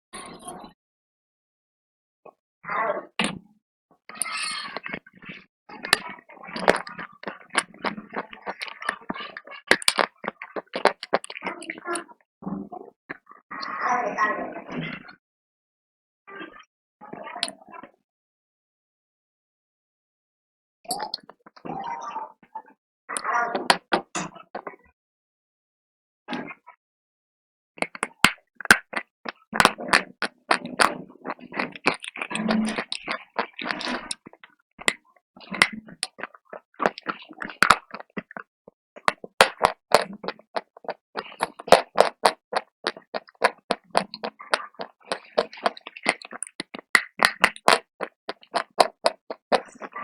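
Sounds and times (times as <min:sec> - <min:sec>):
crunching and chewing: 0:04.2 - 0:12.0, 0:27.8 - 0:50.0.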